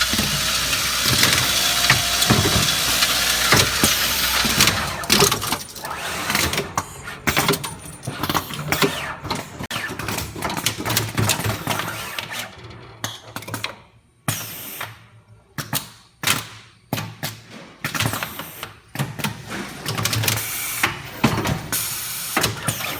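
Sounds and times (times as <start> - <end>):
crimping machine clicking: 0.0 - 9.6.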